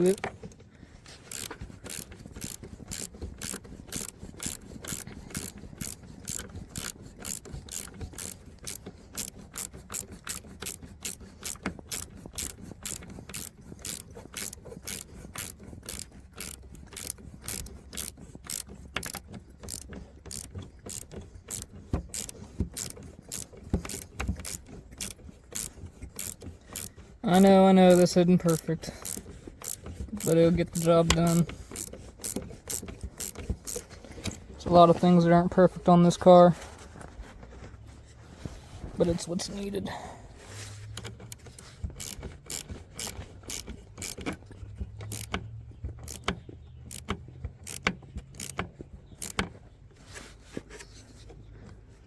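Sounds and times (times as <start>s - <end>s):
ratchet wrench clicking: 0.0s - 0.3s, 1.3s - 34.4s, 40.9s - 44.4s, 45.0s - 45.4s, 46.0s - 48.6s, 49.2s - 49.5s.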